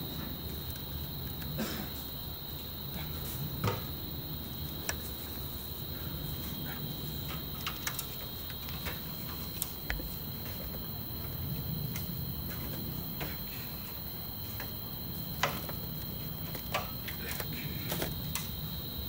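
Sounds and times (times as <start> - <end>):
high insect trill: 0.0 - 19.0
light clicks and knocks: 7.2 - 10.8, 15.4 - 18.5.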